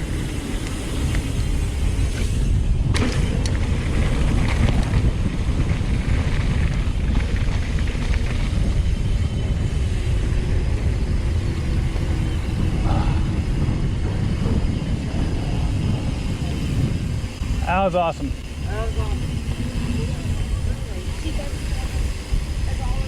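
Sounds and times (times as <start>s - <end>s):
steady low rumble: 0.0s - 23.0s
wind buffeting microphone: 0.0s - 23.0s
sharp clicks and rattles: 0.2s - 9.5s.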